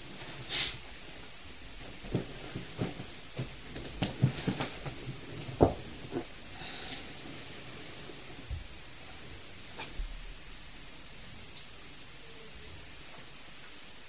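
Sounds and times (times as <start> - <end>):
brief hiss: 0.5 - 0.8.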